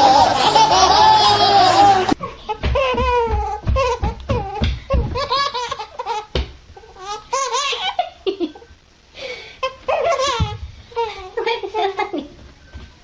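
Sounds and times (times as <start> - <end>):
high-pitched laughter: 0.0 - 2.2.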